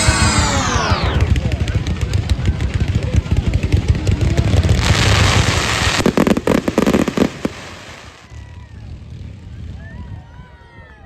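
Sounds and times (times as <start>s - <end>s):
fireworks bangs: 0.0s - 8.3s
fireworks crackling hiss: 4.4s - 8.3s.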